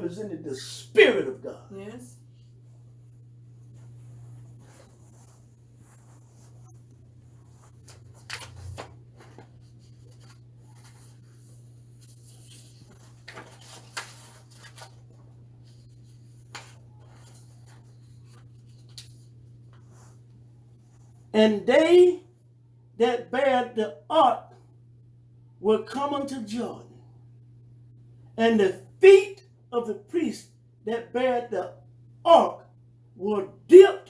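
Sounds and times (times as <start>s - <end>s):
low electrical hum: 0.0s - 34.0s
faint rustling and scratching: 2.3s - 21.3s.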